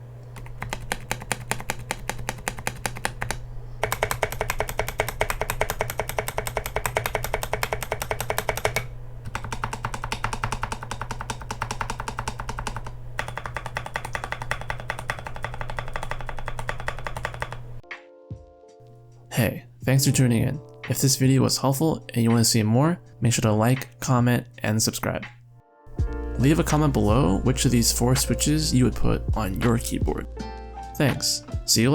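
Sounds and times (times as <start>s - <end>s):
mechanical keyboard typing: 0.4s - 17.8s.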